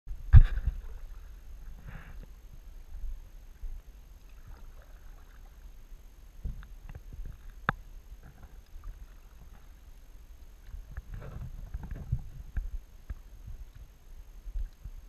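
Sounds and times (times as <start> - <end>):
paddle splashes: 0.4 - 15.0.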